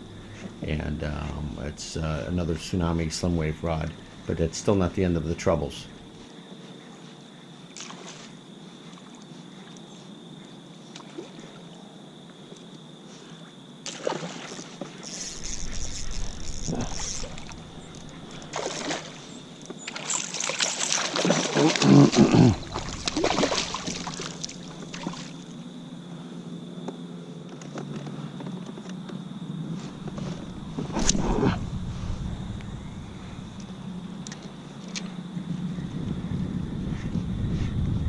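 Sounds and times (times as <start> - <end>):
water splashing around kayak: 7.7 - 9.8, 13.8 - 25.6.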